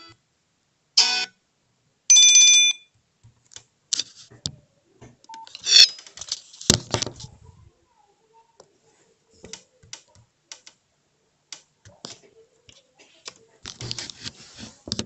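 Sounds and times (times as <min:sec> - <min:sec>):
phone chime: 0:02.1 - 0:02.9.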